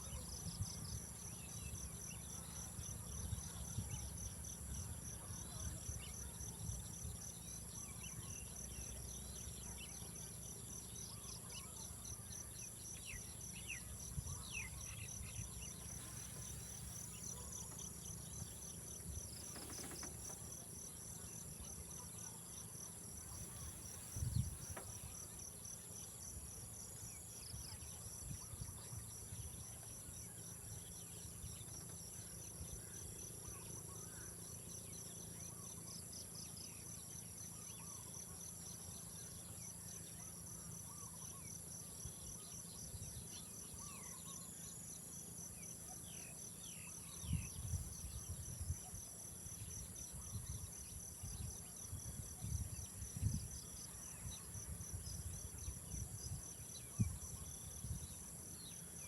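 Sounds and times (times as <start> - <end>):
high pulsing insect call: 0.0 - 59.0
insects trilling: 10.5 - 28.4.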